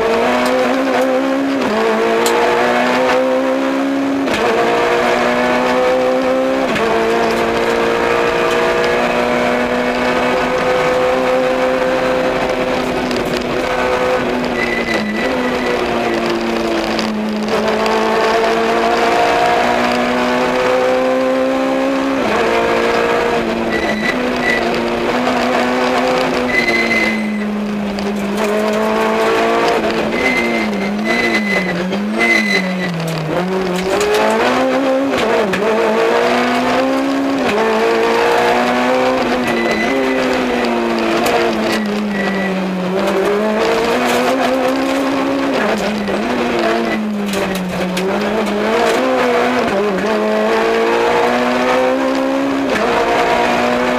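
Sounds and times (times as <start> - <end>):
car engine at high revs: 0.0 - 53.9
tyre squeals: 12.8 - 16.6, 23.6 - 24.8, 25.9 - 27.7, 28.4 - 33.9, 38.5 - 40.6, 41.2 - 42.7.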